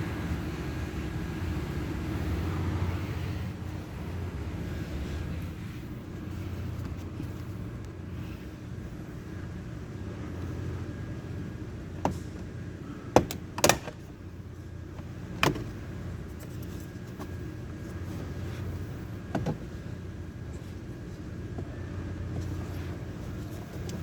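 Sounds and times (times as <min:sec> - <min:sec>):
steady low hum: 0:00.0 - 0:24.0
tools clicking and knocking: 0:13.2 - 0:14.0.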